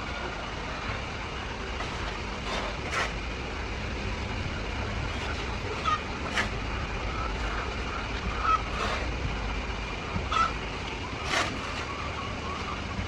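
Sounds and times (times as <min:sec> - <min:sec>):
low rumble: 0:00.0 - 0:13.0
hens clucking and squawking: 0:05.1 - 0:09.3, 0:09.9 - 0:13.0.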